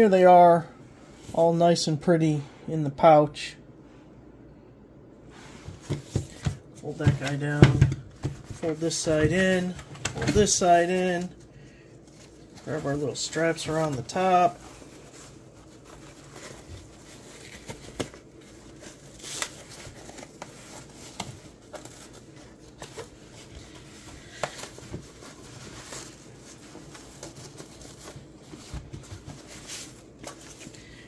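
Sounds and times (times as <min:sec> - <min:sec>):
cloth rustling: 0:08.3 - 0:30.7.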